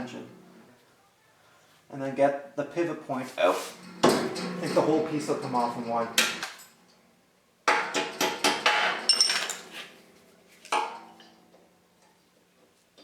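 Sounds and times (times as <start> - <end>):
metal knocking and rattling: 3.7 - 7.0, 7.7 - 10.0.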